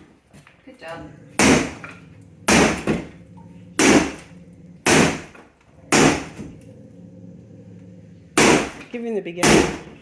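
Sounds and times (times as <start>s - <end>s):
hammer striking wall tiles: 3.8s - 4.2s, 4.8s - 6.5s, 8.4s - 10.0s.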